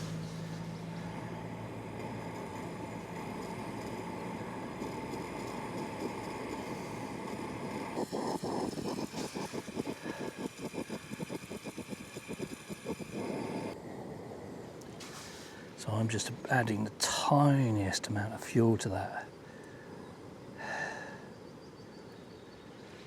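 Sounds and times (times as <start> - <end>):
camping stove burner hissing: 0.0 - 13.8.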